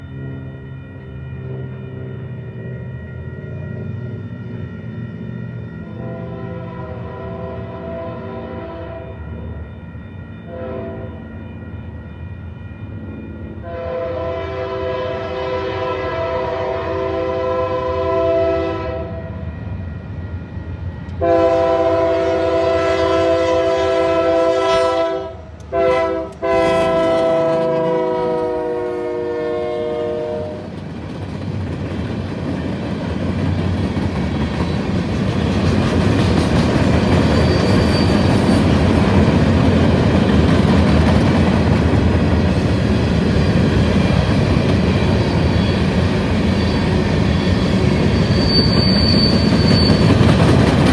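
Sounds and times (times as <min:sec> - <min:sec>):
train rumbling past: 0:00.0 - 0:50.9
locomotive air horn blasts: 0:06.0 - 0:09.1, 0:10.5 - 0:11.2, 0:13.6 - 0:19.4, 0:21.2 - 0:30.6.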